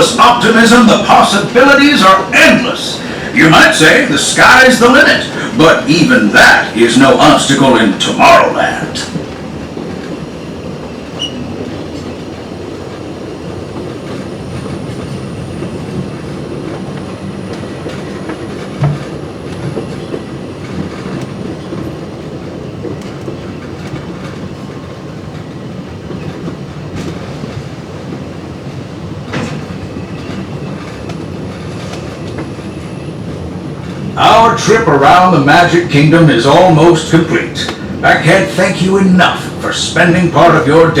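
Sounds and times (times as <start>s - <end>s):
train wheels rumbling on rail: 0.0s - 41.0s
track clicks and knocks: 16.7s - 22.0s.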